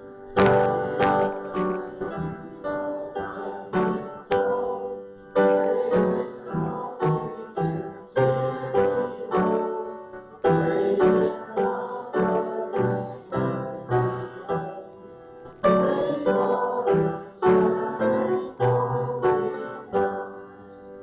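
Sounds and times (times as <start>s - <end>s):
piano playing: 0.0s - 21.0s.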